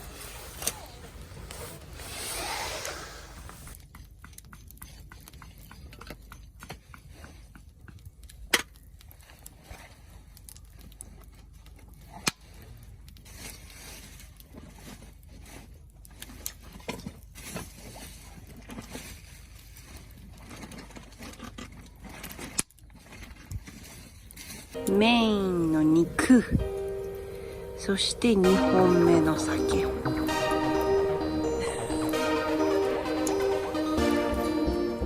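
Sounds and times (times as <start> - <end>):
campfire crackling: 0.0 - 4.0, 24.2 - 35.0.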